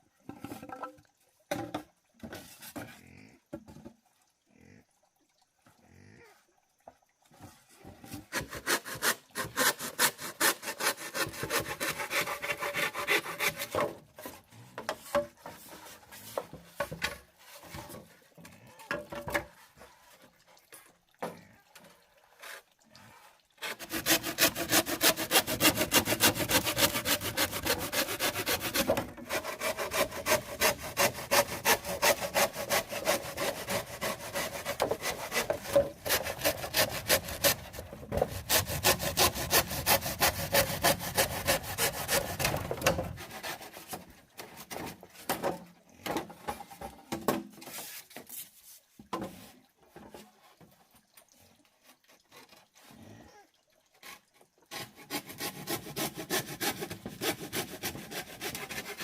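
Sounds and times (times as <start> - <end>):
rasping strokes: 8.3 - 14.4, 23.6 - 44.0, 54.0 - 59.0.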